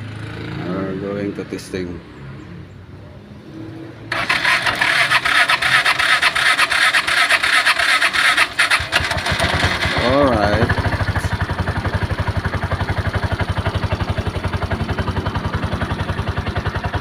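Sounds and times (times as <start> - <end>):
engine starter cranking: 4.1 - 11.1
engine running: 4.1 - 17.0.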